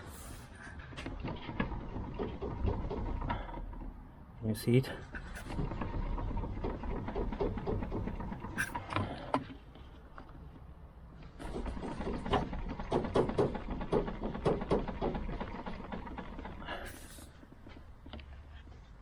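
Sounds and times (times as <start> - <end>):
diesel engine knocking: 1.5 - 4.0, 5.6 - 8.8, 11.6 - 17.9.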